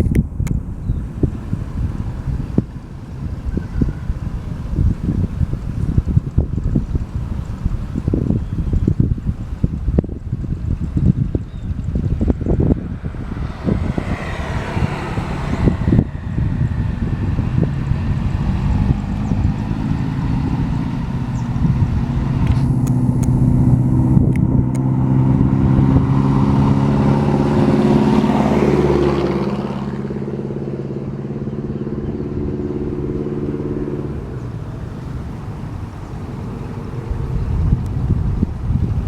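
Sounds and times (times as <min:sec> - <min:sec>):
motor engine running: 0:00.0 - 0:39.0.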